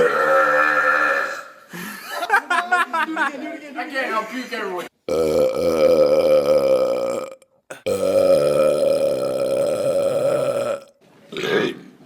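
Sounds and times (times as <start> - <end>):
man belching: 0.0 - 1.6, 5.1 - 11.8.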